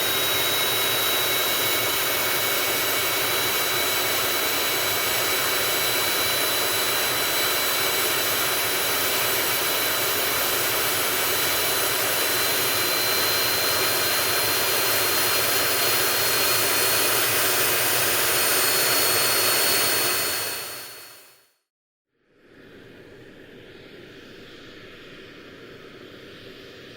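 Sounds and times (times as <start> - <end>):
jet engine running: 0.0 - 21.3.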